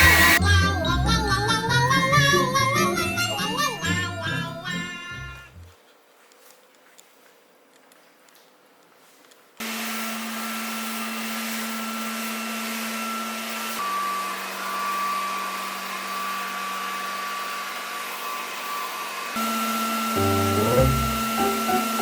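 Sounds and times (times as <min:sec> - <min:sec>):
vacuum cleaner running: 0:09.6 - 0:22.0.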